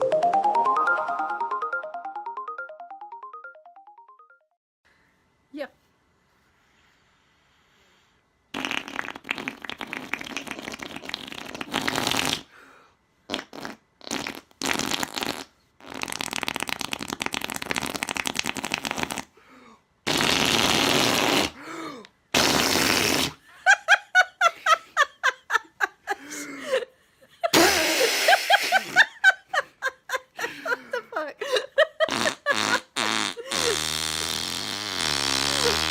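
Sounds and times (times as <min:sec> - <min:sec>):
raspberries blown on skin: 0:08.5 - 0:12.5, 0:13.3 - 0:19.4, 0:20.1 - 0:23.4, 0:27.5 - 0:29.8, 0:31.5 - 0:35.9
laughter: 0:23.5 - 0:33.8.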